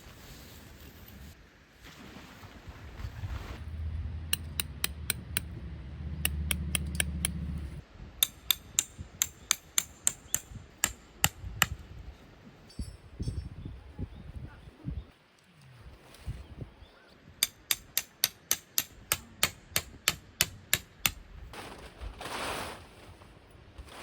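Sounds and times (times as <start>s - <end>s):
low rumble: 3.6s - 8.0s.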